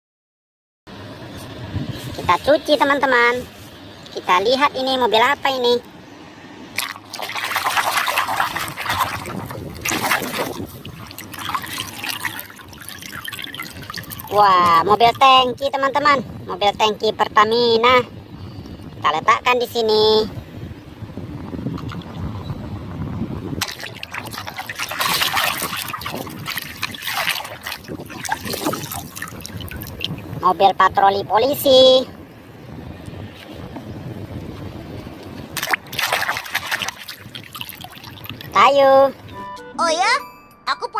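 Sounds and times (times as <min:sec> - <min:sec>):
water splashing and sloshing: 0:00.9 - 0:15.9, 0:21.6 - 0:31.0, 0:32.2 - 0:39.4.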